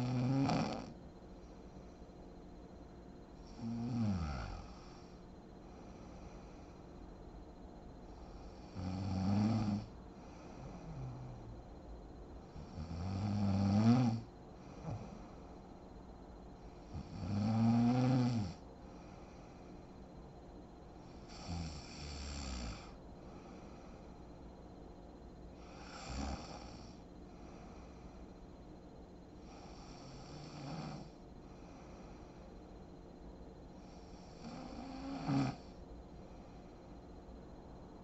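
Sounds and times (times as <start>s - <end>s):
woman snoring: 0.0s - 1.0s, 3.4s - 5.2s, 8.2s - 11.5s, 12.5s - 15.4s, 16.7s - 18.6s, 21.0s - 23.7s, 25.6s - 27.9s, 29.4s - 32.3s, 33.8s - 35.8s.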